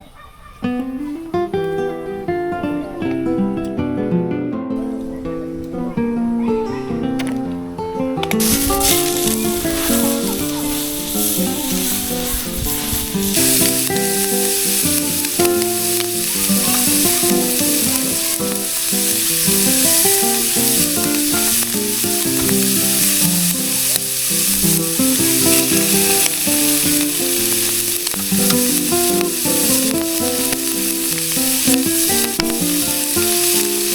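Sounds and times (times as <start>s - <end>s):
food sizzling in a frying pan: 8.3s - 33.9s.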